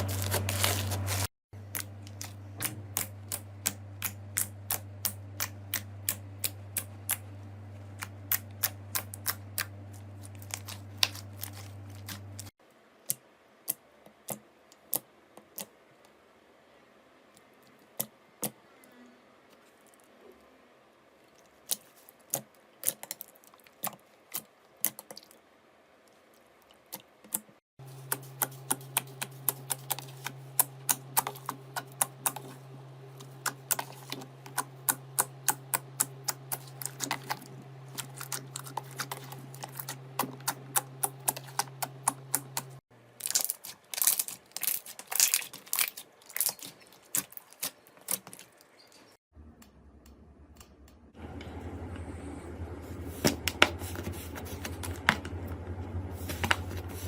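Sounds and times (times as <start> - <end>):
slime crackling and popping: 43.2 - 48.5
low hum: 49.4 - 57.0.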